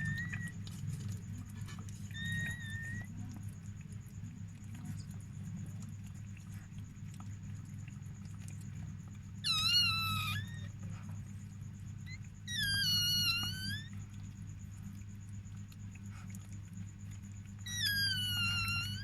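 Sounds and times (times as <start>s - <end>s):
puppy squealing: 0.0s - 0.8s, 1.7s - 3.1s, 9.4s - 10.8s, 12.0s - 14.0s, 17.6s - 19.0s.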